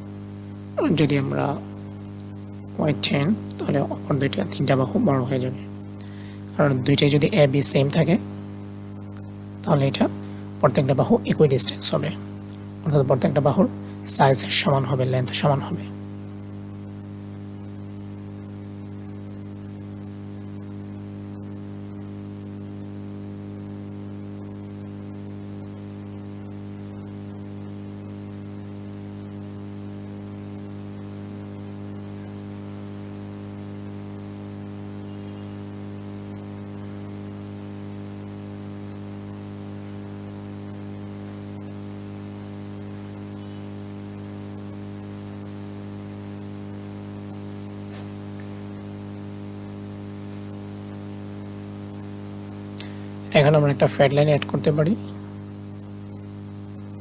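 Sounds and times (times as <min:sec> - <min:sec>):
faint hiss: 0:38.2 - 0:55.4.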